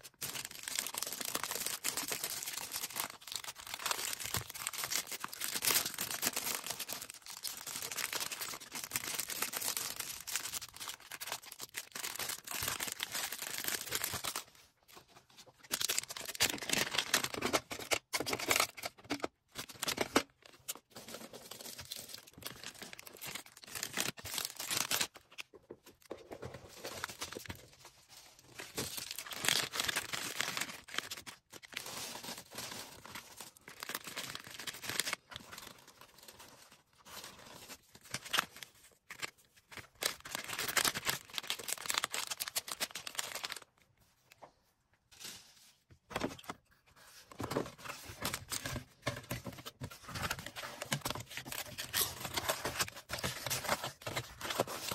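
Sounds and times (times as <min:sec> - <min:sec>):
plastic packaging crinkling: 0:00.0 - 0:14.7, 0:15.6 - 0:43.8, 0:47.9 - 0:54.9
plastic tearing: 0:28.5 - 0:35.4, 0:38.0 - 0:43.7, 0:48.1 - 0:54.9.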